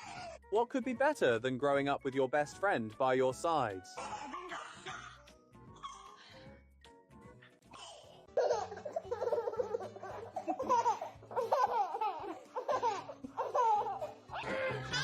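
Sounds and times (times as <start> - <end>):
background music: 0.0 - 15.0
baby laughing: 8.4 - 15.0.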